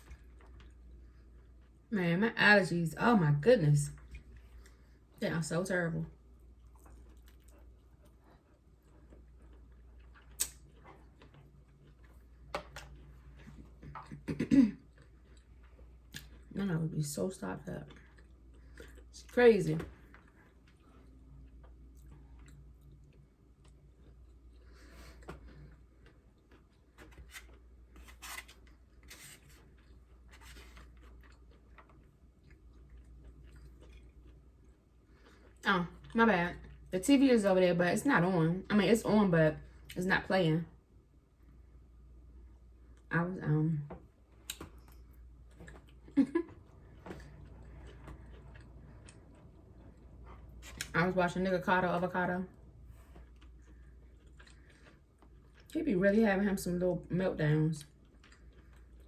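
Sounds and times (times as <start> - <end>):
soft chewing with mouth clicks: 0.0 - 1.9, 3.9 - 5.2, 6.1 - 16.6, 17.6 - 37.0, 43.9 - 51.0, 52.5 - 55.9, 57.6 - 59.0.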